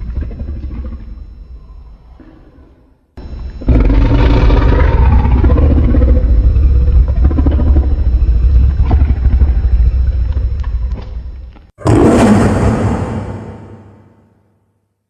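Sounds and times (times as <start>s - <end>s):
monster deep rumble: 3.6s - 10.3s, 11.8s - 14.2s.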